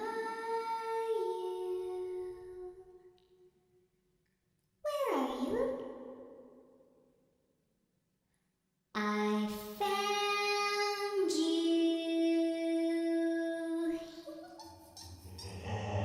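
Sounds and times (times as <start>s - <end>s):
child singing wordless notes: 0.0s - 3.0s, 4.9s - 5.8s, 9.0s - 15.7s.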